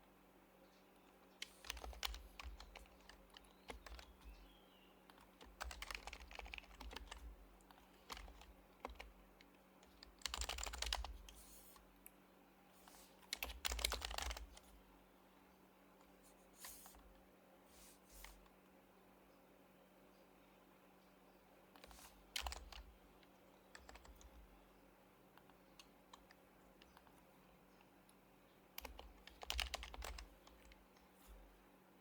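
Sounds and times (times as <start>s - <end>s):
quiet keyboard typing: 1.0s - 12.2s, 12.8s - 14.8s, 21.7s - 31.5s.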